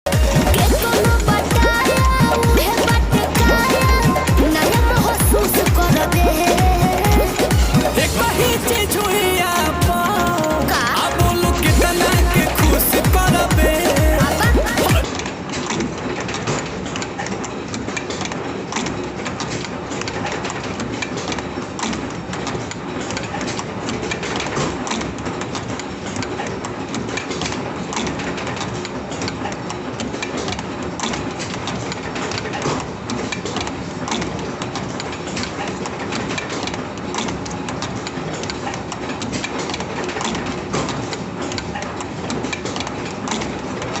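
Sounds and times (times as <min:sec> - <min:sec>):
machine humming: 0:00.0 - 0:15.1
rapid mechanical clicking and knocking: 0:00.0 - 0:44.0.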